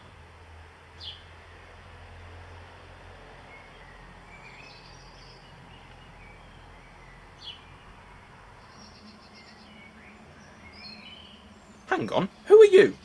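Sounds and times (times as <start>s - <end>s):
faint low hum: 0.0s - 13.0s
birds chirping and trilling: 3.5s - 13.0s.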